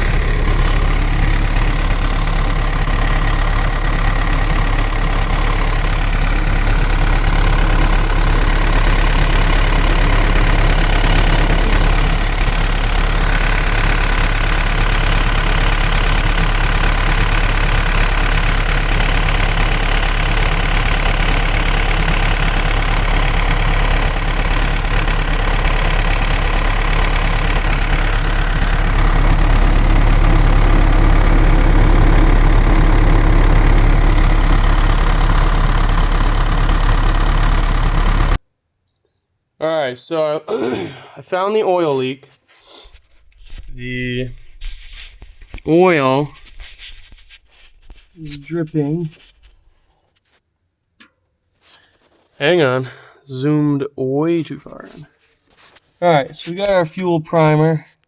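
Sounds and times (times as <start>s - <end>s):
deep low hum: 0.0s - 38.4s
excavator diesel engine idling: 0.0s - 38.4s.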